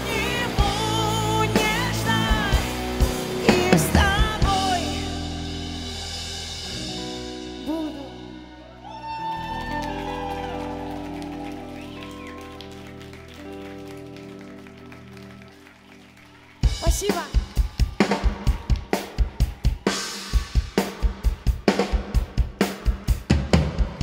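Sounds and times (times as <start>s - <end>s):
woman singing: 0.0s - 5.6s, 7.6s - 8.3s.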